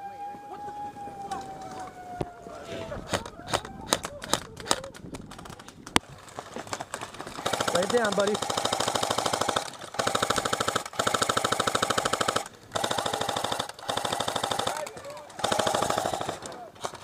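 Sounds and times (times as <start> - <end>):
airsoft rifle firing bursts: 7.0 - 17.0.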